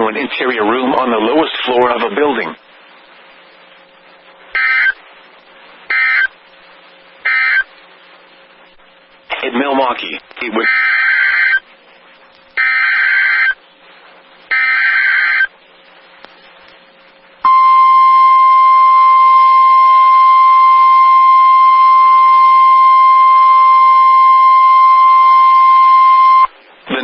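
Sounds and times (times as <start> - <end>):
steady single-pitch alert tone: 17.4 - 26.5.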